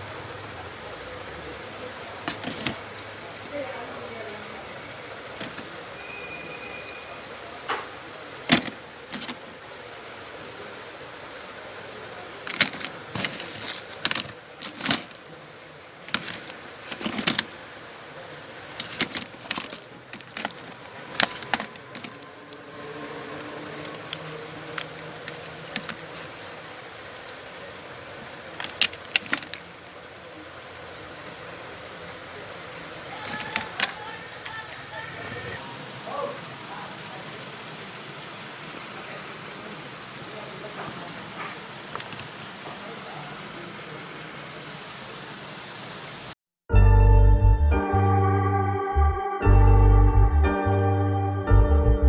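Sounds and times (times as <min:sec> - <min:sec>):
faint hiss: 0:00.0 - 0:46.4
small parts clicking and tapping: 0:12.4 - 0:15.4, 0:18.7 - 0:22.6, 0:23.7 - 0:26.4, 0:28.6 - 0:29.7.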